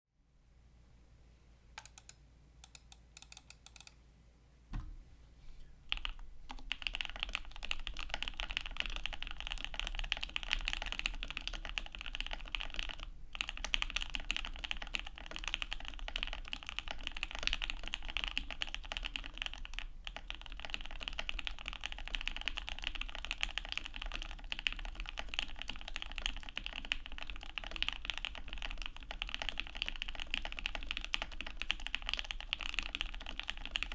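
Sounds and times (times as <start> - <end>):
mechanical keyboard typing: 1.8 - 4.0, 5.9 - 33.9
thump: 4.7 - 5.1.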